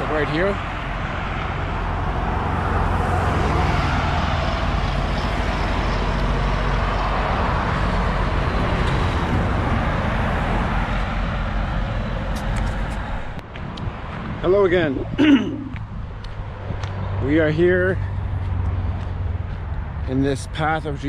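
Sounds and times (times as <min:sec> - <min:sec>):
highway traffic passing: 0:00.0 - 0:21.0.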